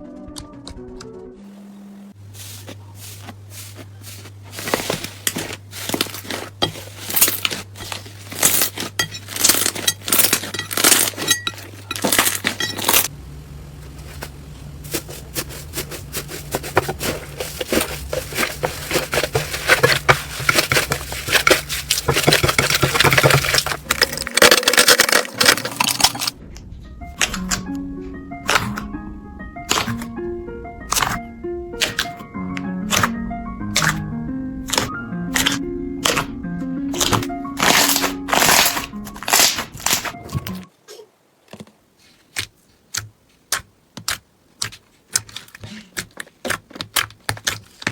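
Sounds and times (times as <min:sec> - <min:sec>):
low hum: 0:01.4 - 0:39.3
slime crackling and popping: 0:29.7 - 0:30.0, 0:30.9 - 0:31.2, 0:31.8 - 0:32.2, 0:34.6 - 0:36.3, 0:36.9 - 0:40.2, 0:42.3 - 0:47.9.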